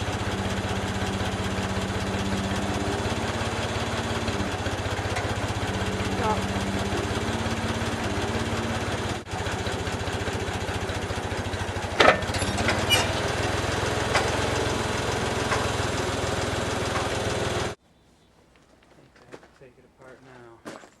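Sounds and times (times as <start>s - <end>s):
diesel engine running: 0.0s - 17.8s
sharp metallic clank: 12.0s - 13.5s.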